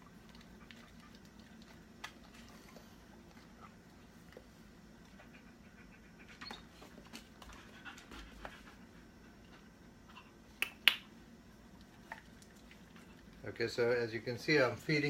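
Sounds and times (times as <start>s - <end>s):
dog panting: 0.0s - 10.4s
dog mouth clicks and snaps: 10.6s - 11.1s.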